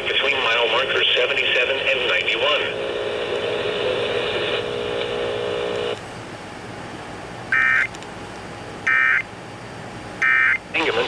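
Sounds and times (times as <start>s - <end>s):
faint radio hiss: 0.0s - 6.0s, 10.7s - 11.0s.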